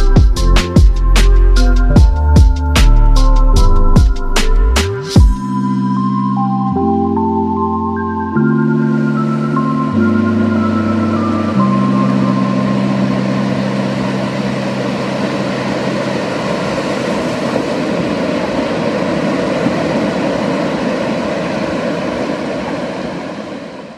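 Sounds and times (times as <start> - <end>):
background music: 0.0 - 17.8
motorboat engine and water rushing: 0.0 - 23.9.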